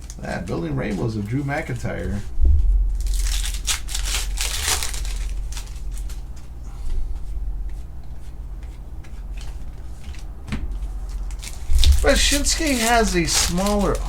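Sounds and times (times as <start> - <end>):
low steady hum: 0.0 - 14.0
cards brushing and flicking: 3.0 - 14.0.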